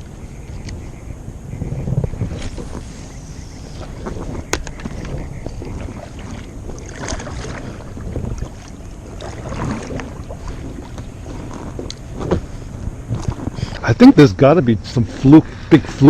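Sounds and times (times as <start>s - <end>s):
wind rumbling on microphone: 0.0s - 16.0s
water splashing against hull: 1.5s - 16.0s.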